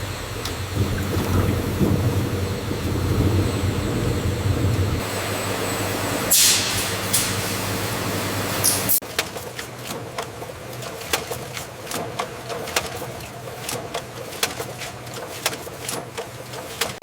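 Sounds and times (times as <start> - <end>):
machinery humming: 0.0 - 8.9
loud hissing: 0.6 - 5.4.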